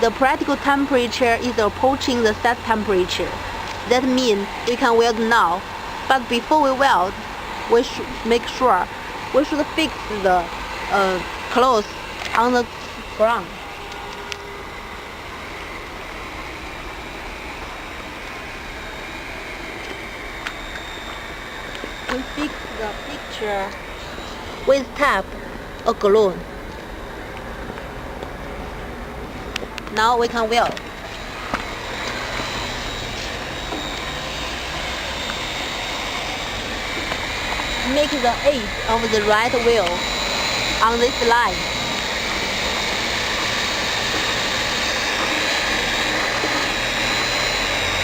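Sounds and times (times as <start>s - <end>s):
hot-air blower hissing: 0.0s - 25.8s, 30.0s - 48.0s
thin high whine: 0.0s - 48.0s
heat gun blowing air: 30.8s - 48.0s.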